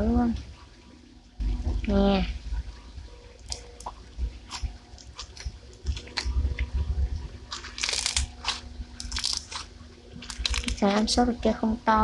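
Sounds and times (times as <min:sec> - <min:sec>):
slime crackling when squeezed: 0:07.6 - 0:11.0.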